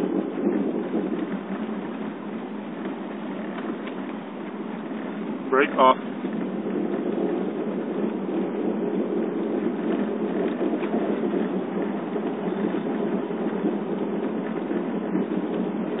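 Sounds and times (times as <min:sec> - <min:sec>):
road noise: 0:00.0 - 0:16.0.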